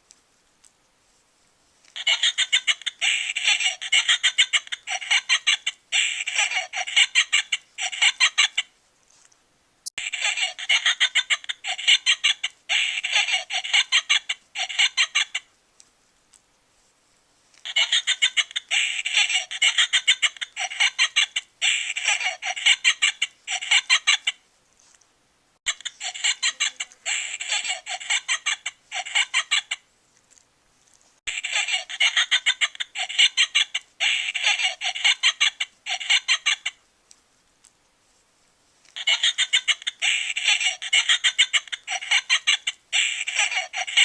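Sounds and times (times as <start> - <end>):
high-pitched cackling laughter: 1.9 - 8.7, 10.0 - 15.5, 17.6 - 24.4, 25.7 - 29.9, 31.3 - 36.8, 38.8 - 44.0.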